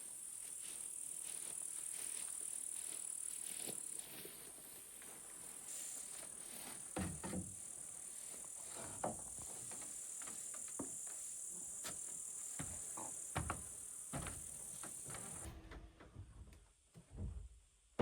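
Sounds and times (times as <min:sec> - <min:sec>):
insects high-pitched drone: 0:00.1 - 0:04.4, 0:07.5 - 0:15.5
scattered knocks and thuds: 0:07.0 - 0:07.6, 0:12.5 - 0:16.5.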